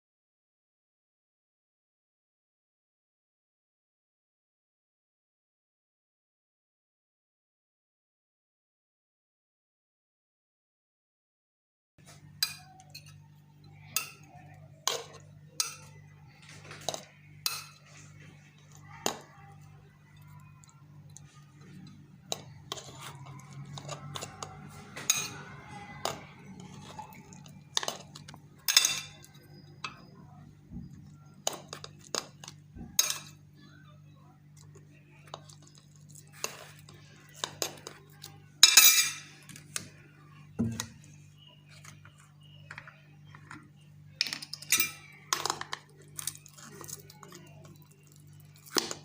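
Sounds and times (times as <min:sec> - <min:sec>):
kitchenware clinking and knocking: 0:21.6 - 0:30.1, 0:40.6 - 0:41.1, 0:44.2 - 0:45.8.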